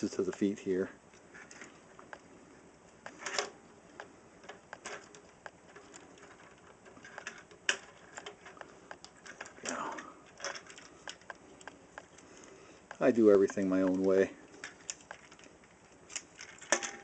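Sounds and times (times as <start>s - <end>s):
plastic toy parts clicking: 4.4s - 17.0s.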